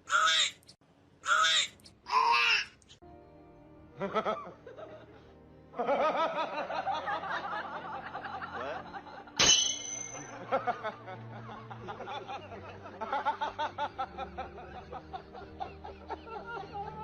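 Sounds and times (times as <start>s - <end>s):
harsh loud calls: 0.0s - 2.7s
music: 3.0s - 17.0s
laughter: 4.0s - 9.4s, 10.1s - 17.0s.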